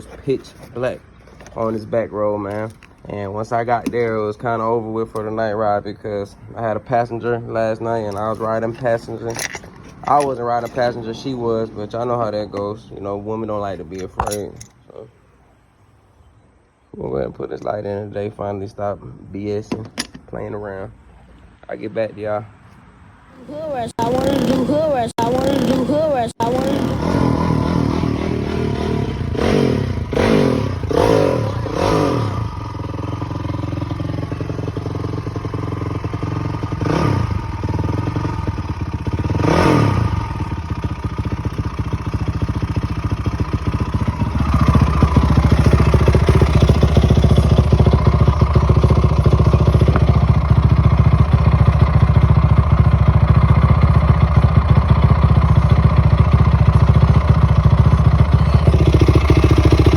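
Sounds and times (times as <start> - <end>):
dirt bike engine revving: 23.4 - 59.9.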